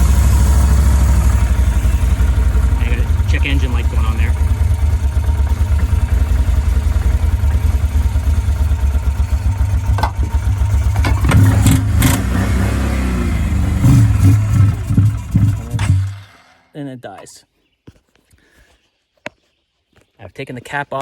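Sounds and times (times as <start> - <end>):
atv engine running rough: 0.0 - 16.7.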